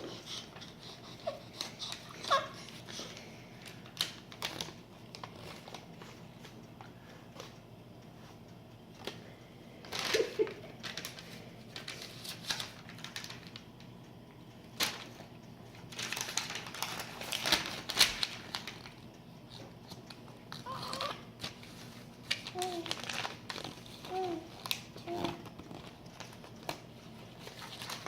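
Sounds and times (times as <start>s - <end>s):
paper being crumpled: 1.2s - 6.2s, 9.8s - 13.7s, 14.8s - 15.2s, 15.9s - 19.0s, 19.9s - 28.0s.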